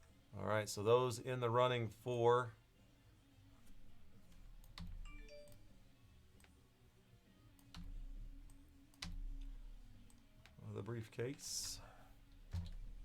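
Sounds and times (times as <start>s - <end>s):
computer mouse and keyboard clicks: 4.2s - 5.6s, 7.6s - 10.6s, 11.3s - 13.0s.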